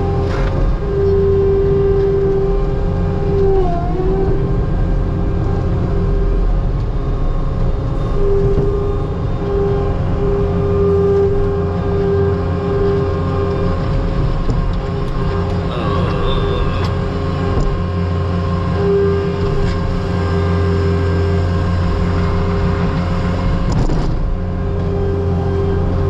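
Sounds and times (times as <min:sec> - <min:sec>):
loader engine running under load: 0:00.0 - 0:26.0
high hydraulic whine: 0:03.0 - 0:23.9.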